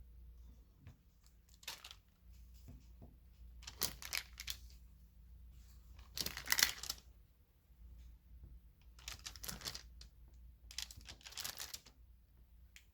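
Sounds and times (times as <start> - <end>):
paper crinkling and rustling: 1.5 - 2.0, 3.6 - 4.8, 6.0 - 7.1, 9.0 - 10.0, 10.7 - 11.9.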